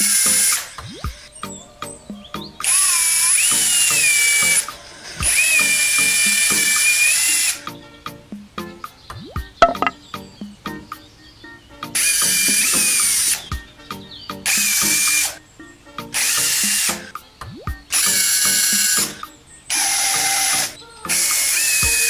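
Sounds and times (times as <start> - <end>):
electric drill whine: 0.0 - 1.4, 2.6 - 7.6, 12.0 - 13.5, 14.5 - 15.4, 16.2 - 17.1, 17.9 - 22.0
background music: 0.0 - 22.0.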